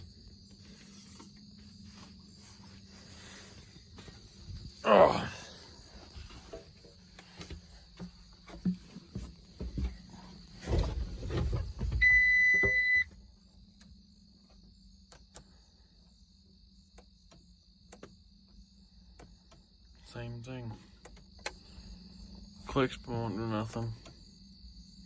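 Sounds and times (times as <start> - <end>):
electronic warning beep: 12.0 - 13.1.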